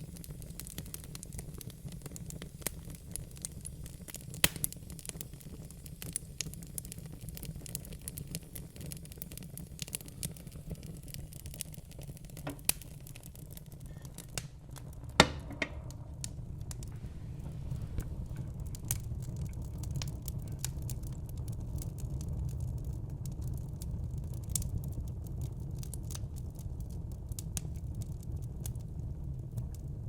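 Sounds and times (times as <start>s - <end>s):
loud pop from fire: 0.0s - 22.6s
fire crackling in fireplace: 0.0s - 30.0s.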